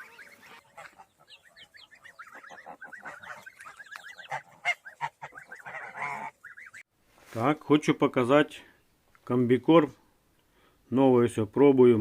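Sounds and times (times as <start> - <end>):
goose calls: 0.0 - 6.8
goslings and chicks peeping: 0.0 - 6.9.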